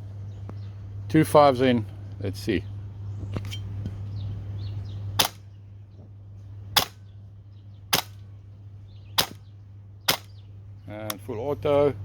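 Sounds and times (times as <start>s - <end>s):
airsoft rifle shots: 5.2s - 5.5s, 6.8s - 7.0s, 7.9s - 8.2s, 9.2s - 9.5s, 10.1s - 10.4s.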